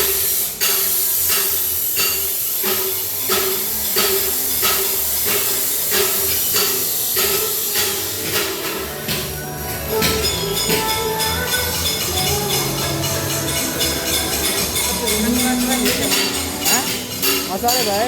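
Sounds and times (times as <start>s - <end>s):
welding arc hissing: 0.0s - 18.0s.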